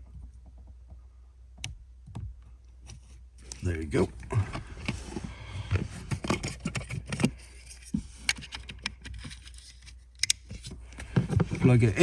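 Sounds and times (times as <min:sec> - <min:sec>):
plastic connector clicks and scrapes: 0:05.7 - 0:11.6.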